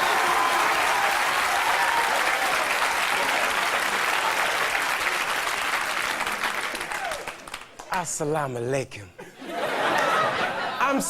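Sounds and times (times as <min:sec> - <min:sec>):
audience applauding: 0:00.0 - 0:08.0.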